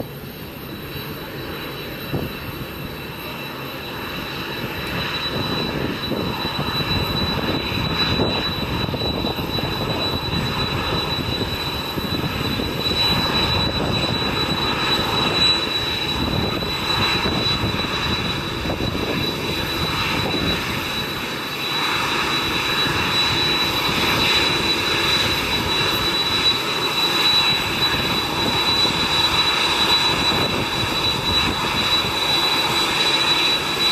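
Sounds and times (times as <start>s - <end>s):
jet engines whining and rumbling: 0.0s - 33.9s.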